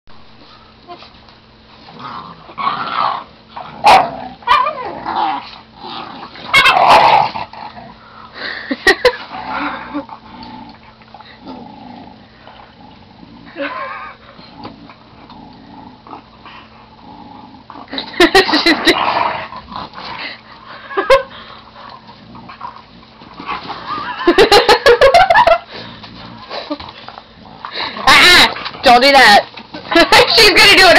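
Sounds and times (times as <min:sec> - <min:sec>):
puppies and dog growling and yipping: 0:00.8 - 0:30.9
dog yelping: 0:03.8 - 0:04.9, 0:06.5 - 0:07.2.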